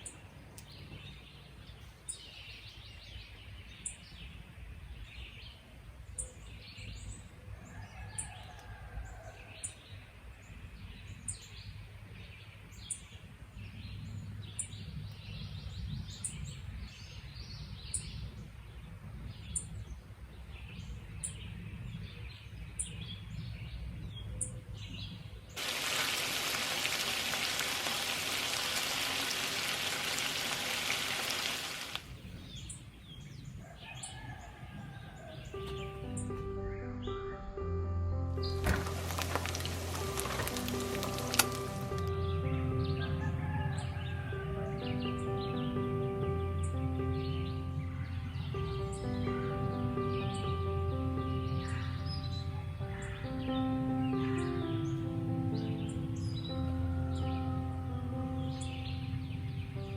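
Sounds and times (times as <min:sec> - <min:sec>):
birds singing: 0:00.0 - 0:37.4, 0:38.4 - 0:59.9
waterfall rushing: 0:25.6 - 0:32.0, 0:38.6 - 0:42.4
low rumble: 0:35.6 - 0:53.9.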